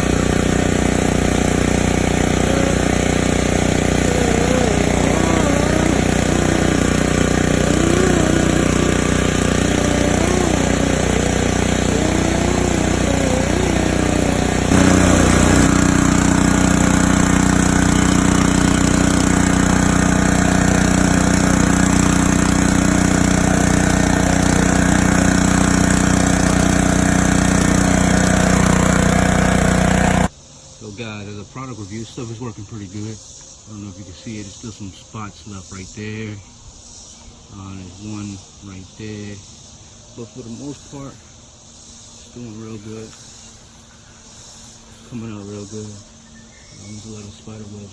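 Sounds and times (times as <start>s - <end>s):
pressure washer engine running: 0.0s - 30.3s.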